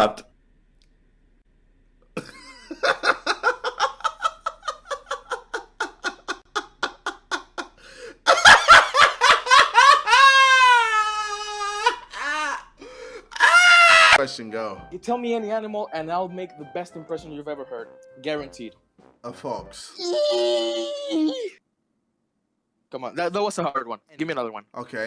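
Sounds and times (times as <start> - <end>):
person giggling and laughing: 2.2 - 12.6.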